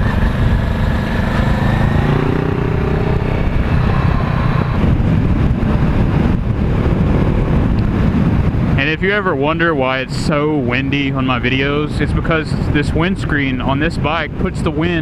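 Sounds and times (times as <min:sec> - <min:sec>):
motorcycle engine running: 0:00.0 - 0:08.8
wind buffeting microphone: 0:00.0 - 0:15.0.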